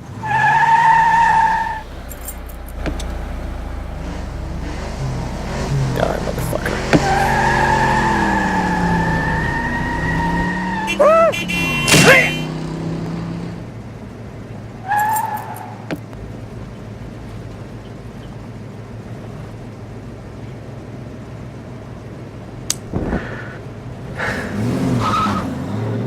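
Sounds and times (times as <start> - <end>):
car engine rumbling: 0.0 - 26.0
short squeal: 0.3 - 12.5
pitched bending sounds: 0.3 - 12.6.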